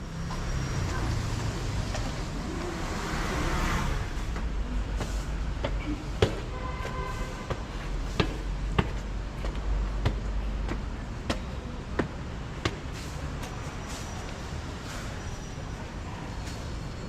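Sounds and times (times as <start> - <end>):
city traffic hum: 0.0 - 17.0
footsteps on hard ground: 0.2 - 3.0, 4.2 - 14.4.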